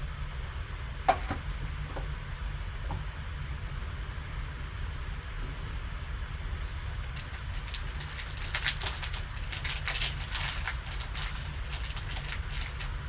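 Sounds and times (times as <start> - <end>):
steady low hum: 0.0 - 13.0
wrappers crinkling: 6.8 - 13.0.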